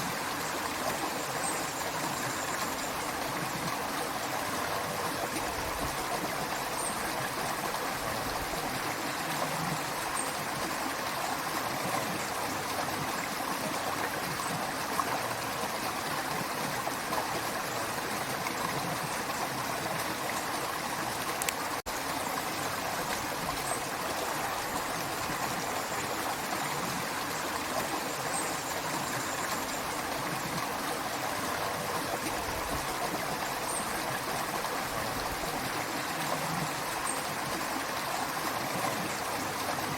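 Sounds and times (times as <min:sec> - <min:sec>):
creek water babbling: 0:00.0 - 0:39.9.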